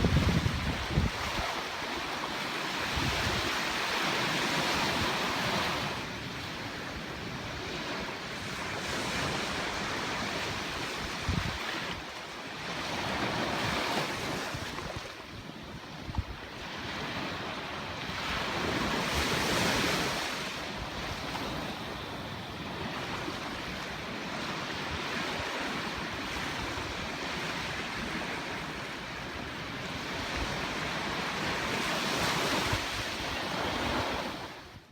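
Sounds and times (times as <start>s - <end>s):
wind buffeting microphone: 0.0s - 6.0s, 8.7s - 12.1s
ocean surf on beach: 0.0s - 34.9s.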